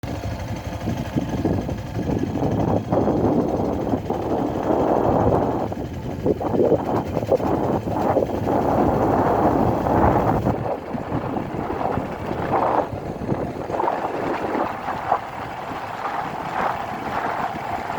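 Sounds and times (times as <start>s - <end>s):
vehicle running noise: 0.0s - 17.9s
wind buffeting microphone: 0.0s - 17.9s.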